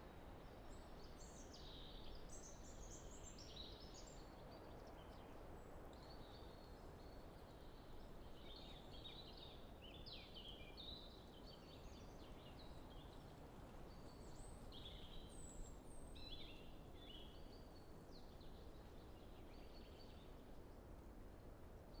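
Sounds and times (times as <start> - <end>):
light wind in trees: 0.0 - 22.0
songbirds singing: 0.0 - 22.0.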